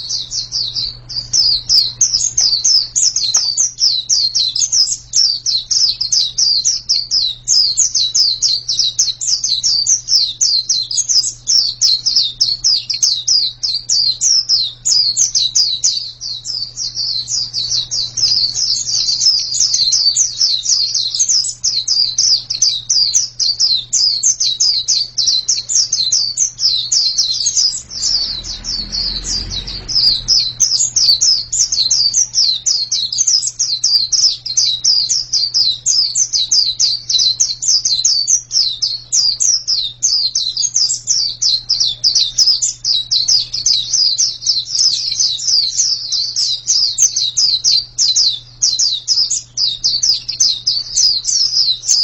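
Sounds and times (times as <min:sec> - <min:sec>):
bird singing fast high chirps: 0:00.0 - 0:52.0
faint low hum: 0:00.0 - 0:52.0
brief low rumble: 0:27.6 - 0:32.1.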